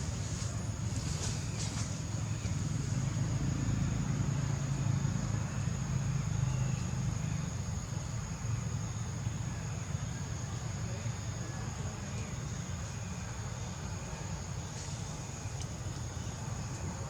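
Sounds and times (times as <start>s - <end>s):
vehicle engine passing: 0.0s - 7.4s.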